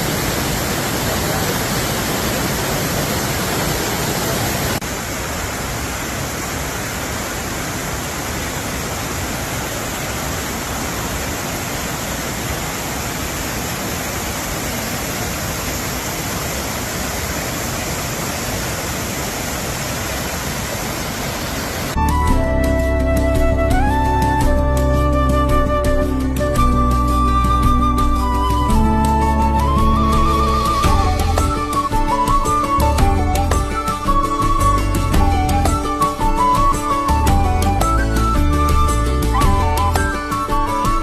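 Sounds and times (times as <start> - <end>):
waterfall rushing: 0.0 - 41.0.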